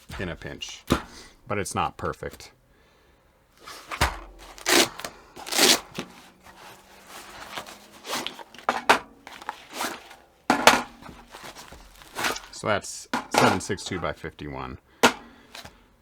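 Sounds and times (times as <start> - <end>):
pouch rustles scrapes and knocks: 3.6 - 12.6, 15.5 - 15.8.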